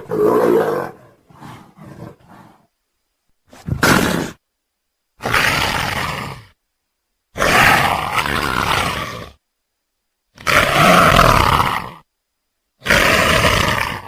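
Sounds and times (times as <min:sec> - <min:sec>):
big cat roaring: 0:00.0 - 0:02.7, 0:05.2 - 0:06.6, 0:07.4 - 0:09.4, 0:10.4 - 0:12.1, 0:12.8 - 0:14.0.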